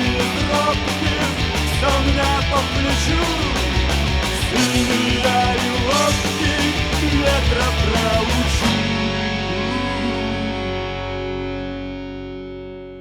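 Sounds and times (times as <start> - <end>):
punk rock band playing: 0.0 - 12.8
final guitar chord ringing: 8.7 - 13.0.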